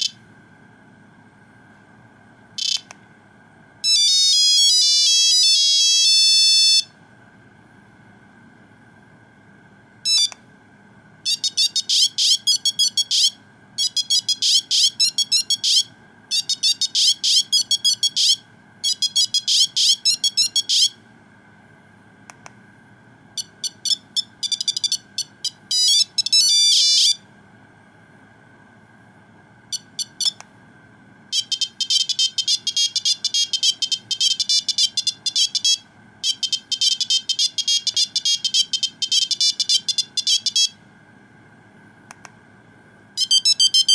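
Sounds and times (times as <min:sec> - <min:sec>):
phone ringtone beeping melodies: 0:03.8 - 0:06.8, 0:11.3 - 0:21.0, 0:23.4 - 0:27.2, 0:31.4 - 0:40.8, 0:43.2 - 0:43.9.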